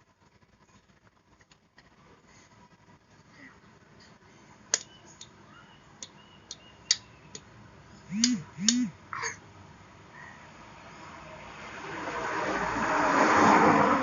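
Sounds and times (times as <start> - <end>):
sharp clicks: 8.1 - 8.9
short voiced sounds: 8.1 - 9.4.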